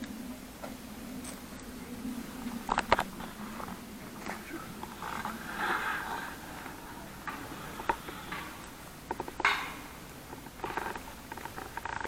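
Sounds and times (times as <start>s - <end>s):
sharp clicks and knocks: 6.0s - 12.0s.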